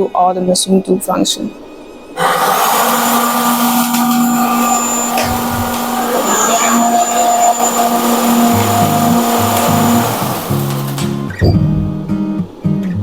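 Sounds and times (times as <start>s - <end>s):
cold spark machines rushing: 2.2s - 11.4s
low musical notes: 3.6s - 12.7s.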